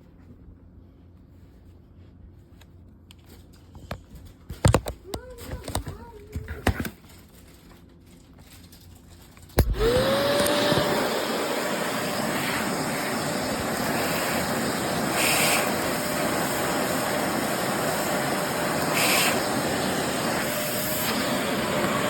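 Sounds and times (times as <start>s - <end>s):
vacuum cleaner motor whine: 9.6s - 22.0s.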